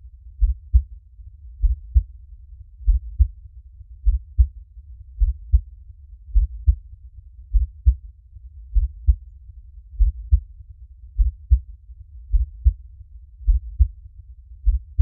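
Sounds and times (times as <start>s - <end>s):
slow heartbeat thumps: 0.4s - 0.9s, 1.6s - 2.1s, 2.8s - 3.4s, 4.0s - 4.5s, 5.2s - 5.7s, 6.3s - 6.8s, 7.5s - 8.0s, 8.7s - 9.2s, 10.0s - 10.5s, 11.2s - 11.7s, 12.3s - 12.8s, 13.4s - 14.0s, 14.6s - 15.0s.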